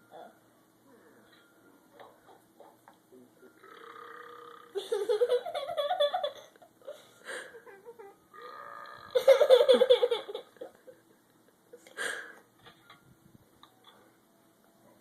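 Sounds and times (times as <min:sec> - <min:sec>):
person burping: 0:03.6 - 0:04.8, 0:08.3 - 0:09.2
laughter: 0:04.8 - 0:06.7, 0:09.2 - 0:11.6.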